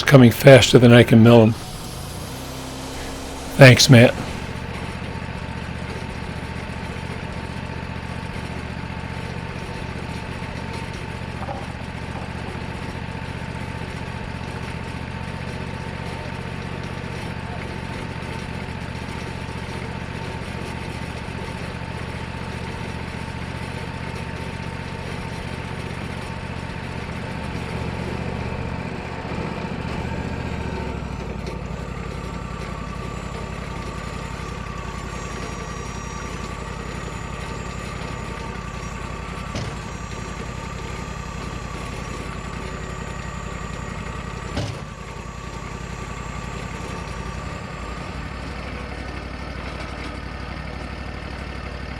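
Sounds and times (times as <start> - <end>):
sawmill engine droning: 0.0 - 51.9.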